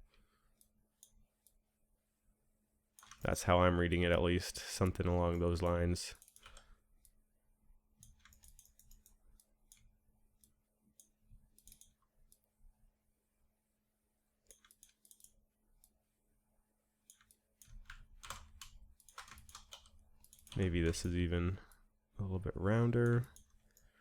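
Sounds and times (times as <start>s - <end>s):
computer mouse and keyboard clicks: 3.0s - 3.3s, 6.2s - 7.2s, 8.0s - 12.4s, 14.5s - 15.4s, 17.1s - 21.1s.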